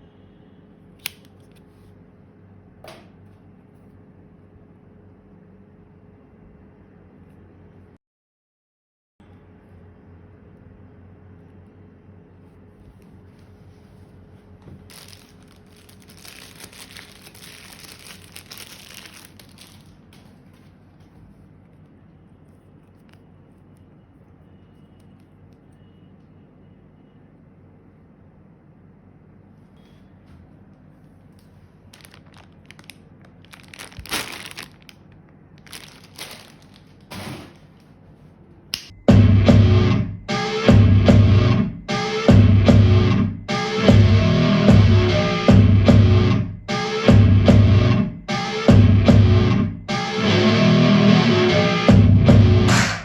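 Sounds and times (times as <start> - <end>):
packaging crinkling: 14.8 - 20.9, 31.5 - 37.1.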